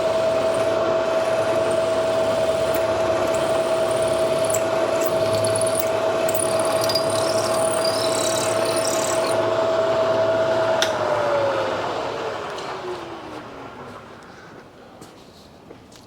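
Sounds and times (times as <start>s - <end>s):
milling machine spindle whine: 0.0s - 13.8s
drill bit squealing in steel: 1.9s - 9.4s.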